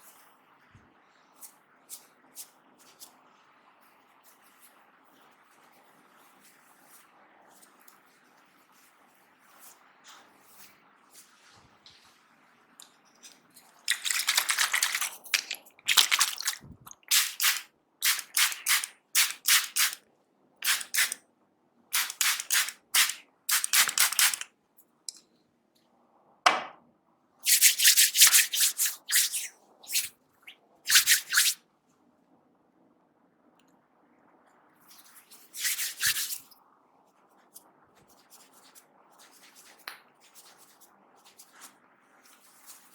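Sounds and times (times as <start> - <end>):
hair crackling as it is twisted: 13.2 - 20.0, 22.0 - 24.4, 27.4 - 31.6, 34.9 - 36.5.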